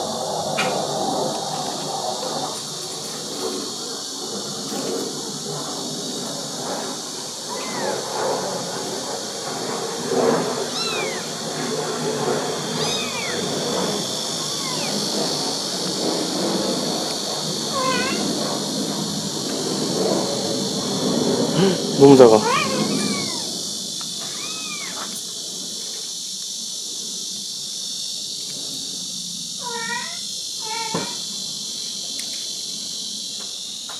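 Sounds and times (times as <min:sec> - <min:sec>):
insects trilling: 0:00.0 - 0:33.9
kitten mewing: 0:07.4 - 0:08.0, 0:10.7 - 0:11.4, 0:12.7 - 0:13.6, 0:14.4 - 0:15.1, 0:17.7 - 0:18.4, 0:21.6 - 0:23.5, 0:24.2 - 0:25.0, 0:29.6 - 0:31.2.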